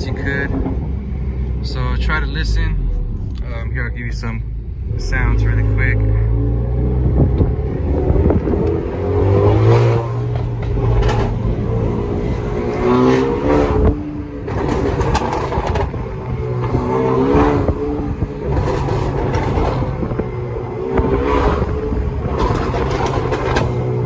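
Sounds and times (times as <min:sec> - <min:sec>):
car engine revving: 0:00.0 - 0:24.0
exhaust pops and crackles: 0:07.0 - 0:24.0.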